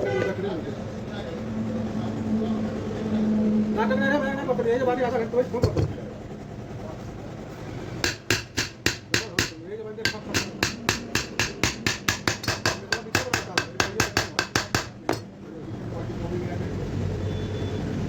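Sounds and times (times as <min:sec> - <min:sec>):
hammer tapping on metal: 0:08.0 - 0:15.3.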